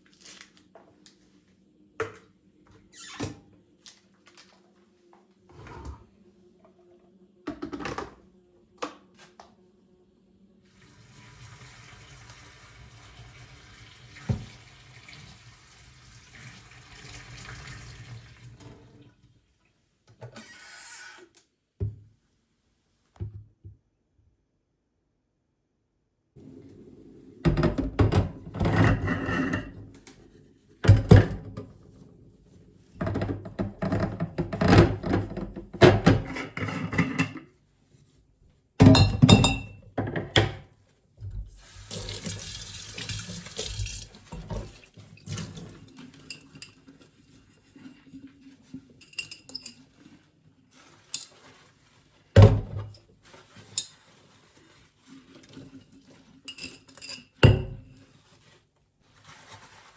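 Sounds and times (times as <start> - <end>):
water tap running: 10.7 - 18.6, 41.5 - 45.6
dishes and utensils clattering: 27.5 - 29.9, 33.0 - 37.5, 38.8 - 40.6, 44.2 - 47.2, 49.0 - 49.9, 55.6 - 57.9.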